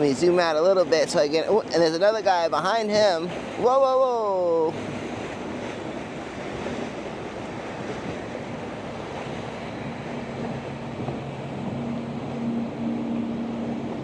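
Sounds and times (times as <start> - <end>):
motorboat engine droning: 0.0 - 14.0
water wash: 0.0 - 14.0
wind noise on microphone: 4.5 - 14.0.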